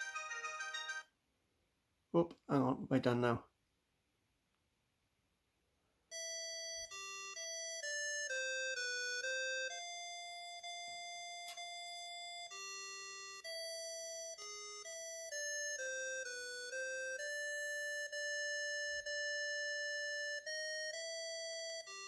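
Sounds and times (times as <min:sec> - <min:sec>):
electronic ringtone melody: 0:00.0 - 0:01.1, 0:06.1 - 0:22.0.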